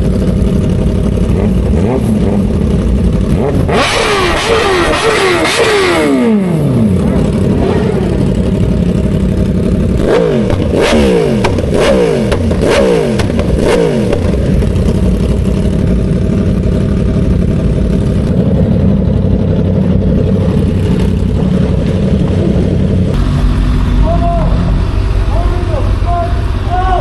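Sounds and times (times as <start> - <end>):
motorcycle engine revving: 0.0 - 27.0
road and wind noise: 0.0 - 27.0.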